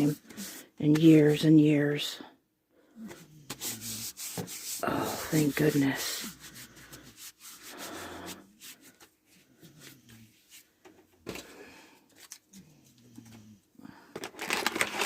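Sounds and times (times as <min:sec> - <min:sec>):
plastic packaging crinkling: 0:14.1 - 0:15.0.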